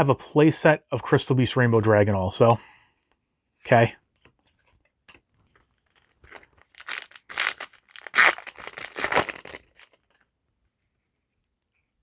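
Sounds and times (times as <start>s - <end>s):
foil pack tearing and crinkling: 6.0s - 10.0s.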